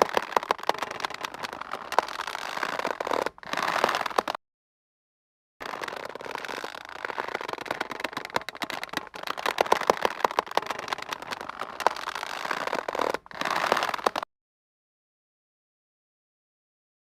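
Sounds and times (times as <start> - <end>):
taut rope creaking and squeaking: 0.0 - 4.4, 5.6 - 14.3.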